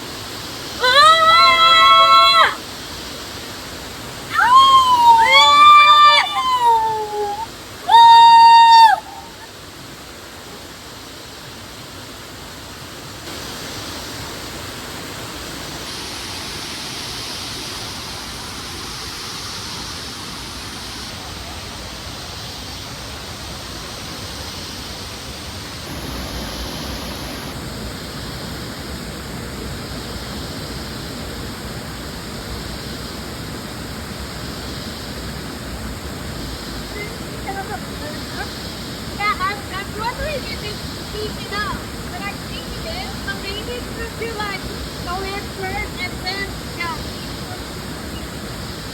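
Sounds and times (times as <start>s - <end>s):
waterfall rushing: 0.0s - 48.9s.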